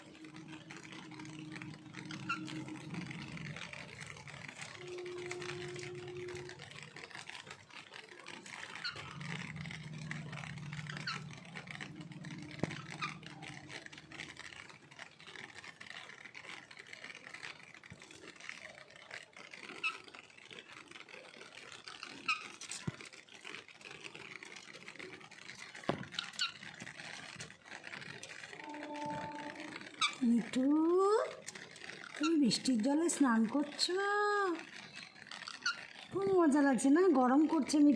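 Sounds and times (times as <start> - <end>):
parrot chirping: 0.0 - 6.8, 8.5 - 14.3, 26.1 - 26.7, 28.5 - 30.3, 34.8 - 36.2
rain falling: 0.0 - 20.0, 23.9 - 37.9.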